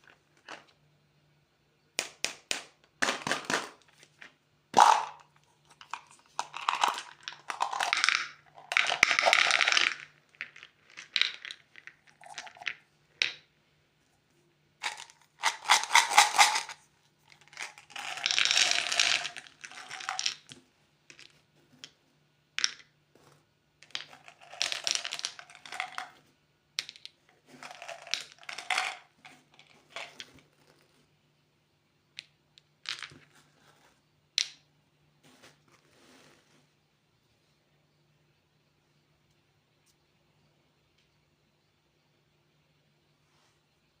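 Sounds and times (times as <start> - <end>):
plastic candy wrappers crinkling: 4.8 - 12.7, 14.8 - 20.6.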